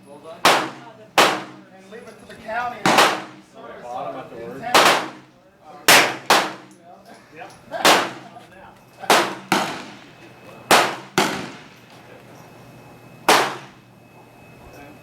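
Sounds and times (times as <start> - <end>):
gunshots with echo: 0.4 - 1.6, 2.8 - 3.4, 4.7 - 5.3, 5.9 - 6.7, 7.8 - 8.3, 9.1 - 11.9, 13.3 - 13.8.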